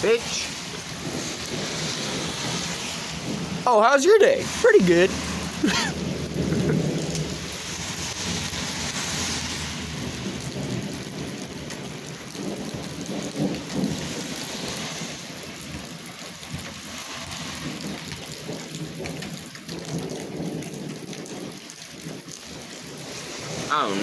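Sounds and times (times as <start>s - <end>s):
rain pattering: 0.0s - 24.0s.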